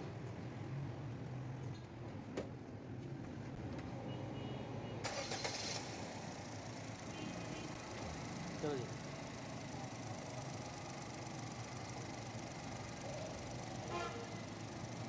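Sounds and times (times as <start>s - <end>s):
car engine idling: 7.8s - 13.7s.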